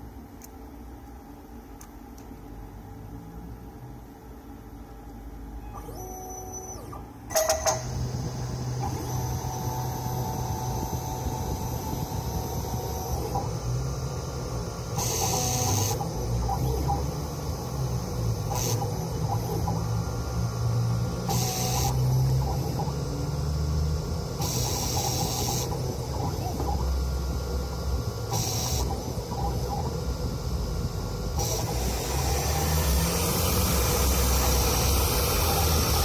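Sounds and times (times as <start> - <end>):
cnc router milling: 5.6 - 36.0
sharp machine clicks: 6.9 - 20.1, 21.1 - 23.3, 24.4 - 26.9, 31.3 - 36.0.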